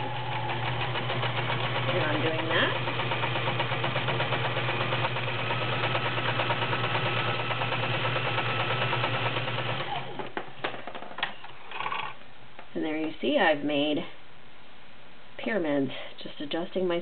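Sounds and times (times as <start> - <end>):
sewing machine stitching: 0.0 - 10.3.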